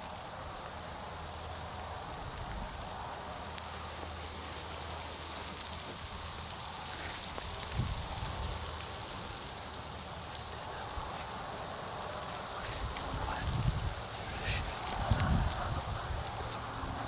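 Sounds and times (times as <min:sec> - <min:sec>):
strong wind hissing: 0:00.0 - 0:17.0
wind buffeting microphone: 0:07.1 - 0:17.0.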